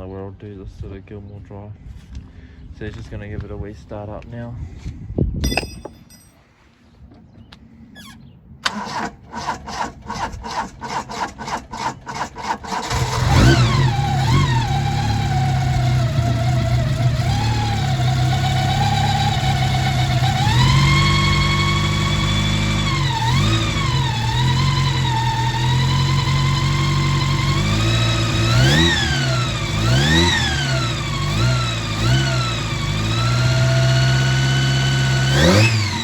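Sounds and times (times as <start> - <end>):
engine cranking on starter: 8.6 - 36.0
car engine idling: 12.9 - 20.6, 21.2 - 36.0.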